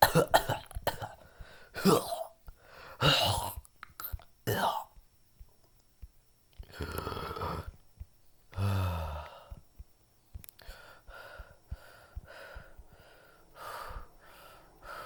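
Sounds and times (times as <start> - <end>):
man panting: 10.6 - 15.0.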